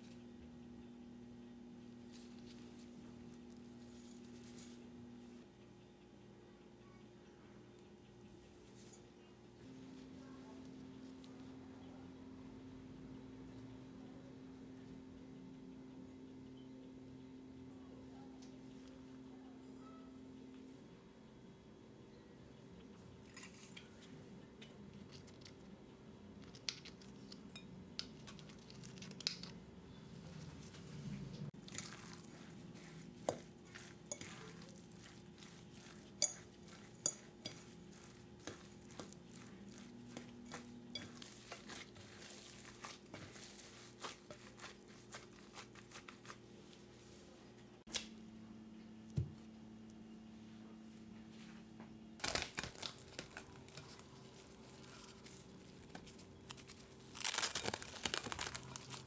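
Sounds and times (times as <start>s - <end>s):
low steady hum: 0.0s - 59.0s
utensils and dishes clinking: 31.7s - 45.7s.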